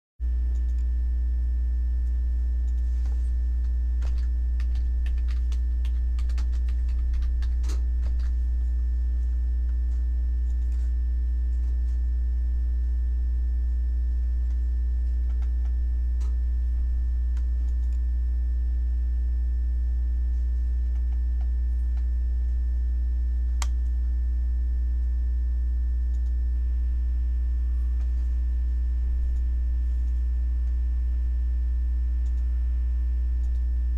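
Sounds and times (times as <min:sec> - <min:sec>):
low electrical hum: 0:00.2 - 0:33.9
computer keyboard clicks: 0:04.0 - 0:08.4, 0:15.3 - 0:16.4.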